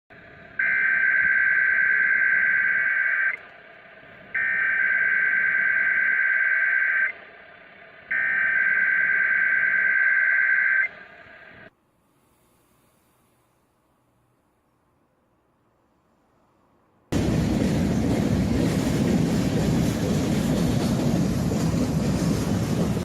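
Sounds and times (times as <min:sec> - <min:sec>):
warbling digital data tones: 0:00.6 - 0:03.4, 0:04.4 - 0:07.2
faint radio hiss: 0:08.7 - 0:17.1.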